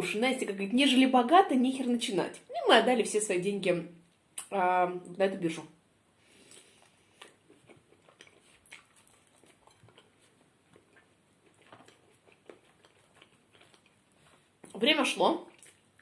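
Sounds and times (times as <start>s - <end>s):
person chewing: 6.3s - 14.8s, 15.5s - 16.0s.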